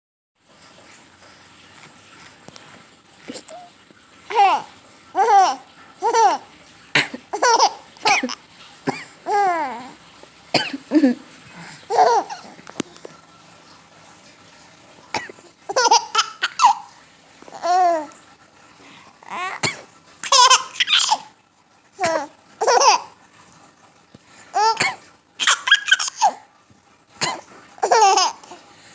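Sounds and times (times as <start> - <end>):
coughing: 4.3 - 12.6, 15.1 - 16.9, 19.2 - 21.3, 22.0 - 23.1, 24.5 - 26.4, 27.2 - 28.6.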